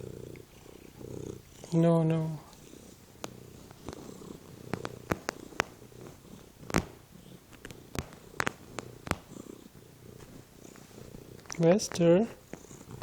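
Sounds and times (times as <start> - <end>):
cat purring: 0.0 - 13.0.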